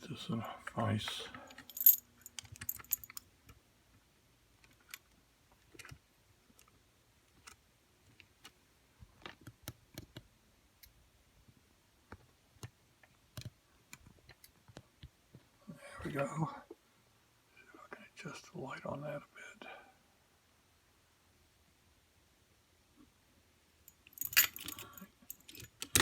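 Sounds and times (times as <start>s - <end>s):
metallic clicks of padlock: 1.6s - 3.3s, 24.0s - 26.0s.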